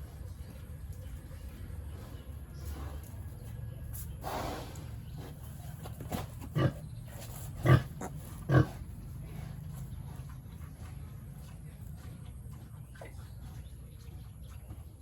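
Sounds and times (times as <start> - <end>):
steady low hum: 0.0 - 15.0
pigs grunting: 4.1 - 15.0.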